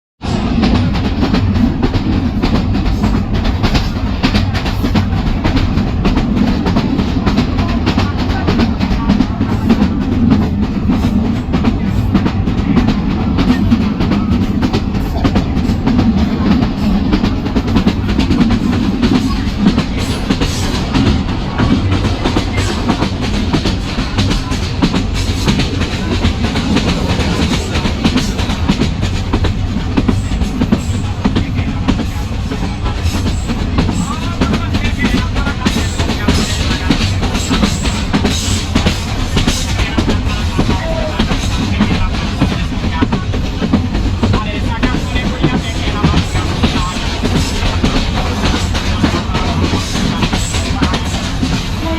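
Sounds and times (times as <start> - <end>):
train rumbling: 0.2 - 51.9.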